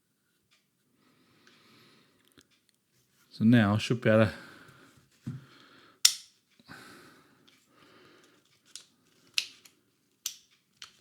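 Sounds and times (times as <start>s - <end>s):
pistol slide clicking and sliding: 6.0s - 6.3s, 8.7s - 11.0s.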